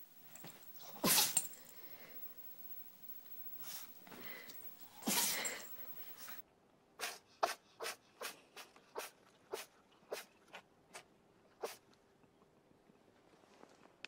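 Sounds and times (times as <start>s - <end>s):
animal sneezing: 0.4s - 1.7s, 3.6s - 6.4s, 7.0s - 11.0s, 11.6s - 11.8s.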